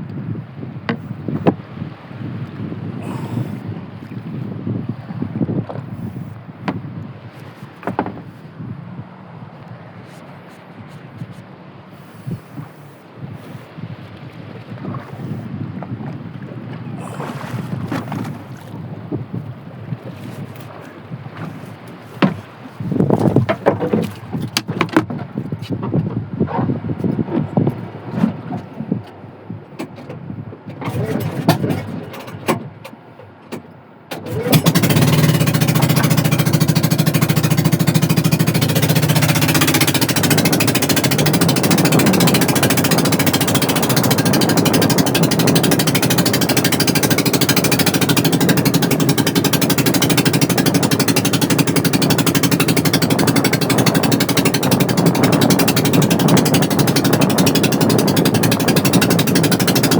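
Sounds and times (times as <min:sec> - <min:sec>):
small boat engine chugging: 0:00.0 - 0:09.5, 0:11.9 - 0:29.4, 0:34.1 - 0:59.9
knocks and handling noises: 0:07.8 - 0:08.3, 0:22.2 - 0:22.5, 0:23.2 - 0:25.3.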